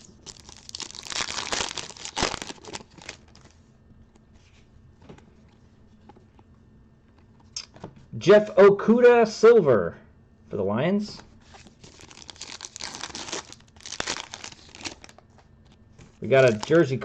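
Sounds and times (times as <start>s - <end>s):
foil wrapper tearing and crinkling: 0.0s - 3.5s, 11.7s - 15.2s, 16.2s - 17.0s
cards clicking and rustling: 11.6s - 17.0s.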